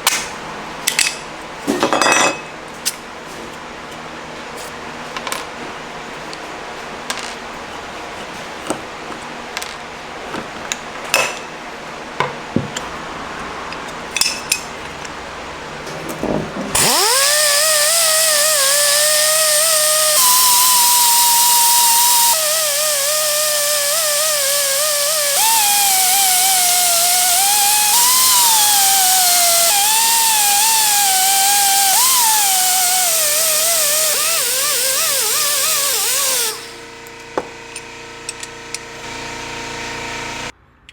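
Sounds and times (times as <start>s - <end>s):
rotary power tool whining: 16.7s - 37.4s
grinding hiss of sanding metal: 16.8s - 36.8s.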